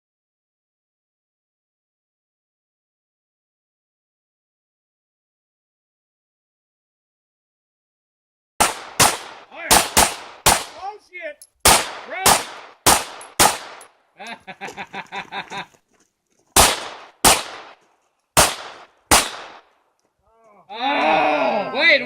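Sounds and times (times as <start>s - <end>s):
gunshots: 8.6s - 10.8s, 11.6s - 13.9s, 16.6s - 17.8s, 18.4s - 19.7s.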